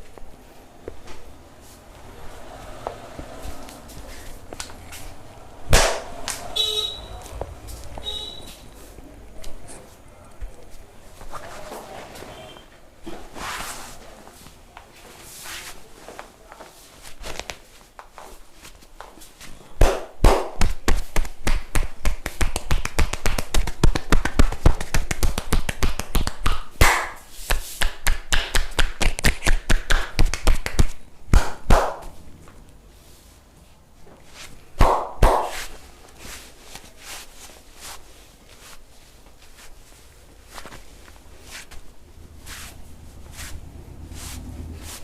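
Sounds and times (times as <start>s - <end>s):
hands slapping a body: 4.5s - 4.8s, 5.7s - 6.5s, 19.8s - 32.2s, 34.8s - 35.8s.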